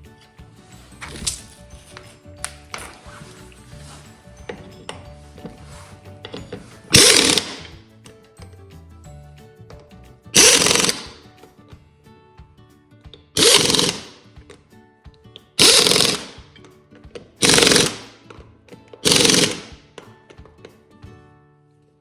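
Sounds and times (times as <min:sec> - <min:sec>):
quiet background music: 0:00.0 - 0:22.0
rattling power tool bursts: 0:06.9 - 0:07.8, 0:10.4 - 0:11.2, 0:13.4 - 0:14.2, 0:15.6 - 0:16.5, 0:17.4 - 0:18.2, 0:19.0 - 0:19.8.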